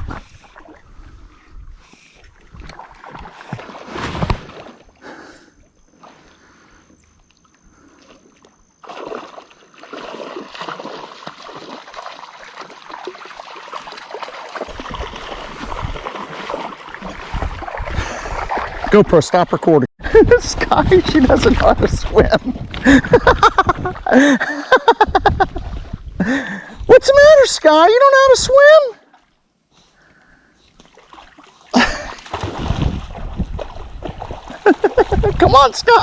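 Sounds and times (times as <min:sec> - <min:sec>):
water splashing: 0:00.0 - 0:01.3, 0:01.9 - 0:05.1, 0:07.4 - 0:24.6, 0:30.8 - 0:36.0.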